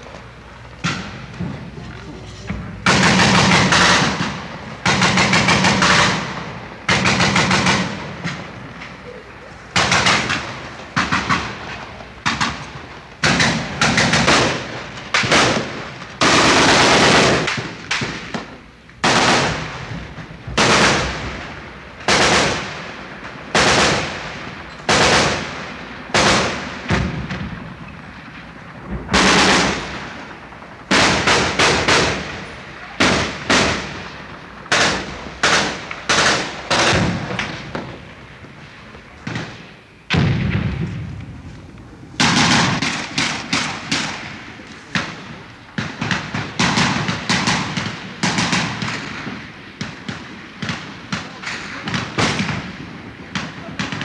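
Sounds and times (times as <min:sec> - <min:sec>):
gunshots with echo: 0:00.0 - 0:12.7, 0:39.2 - 0:54.0.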